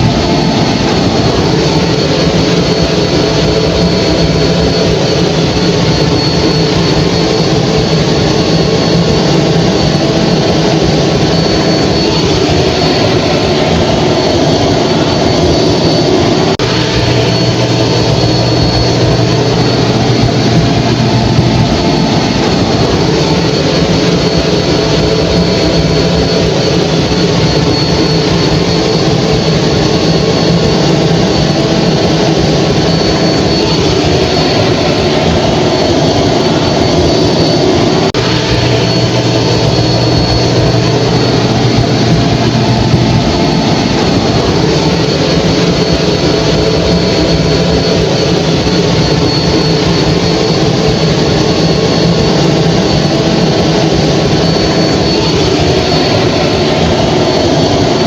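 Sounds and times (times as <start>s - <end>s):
low hum: 0.0s - 58.0s
hair dryer running: 5.9s - 26.3s.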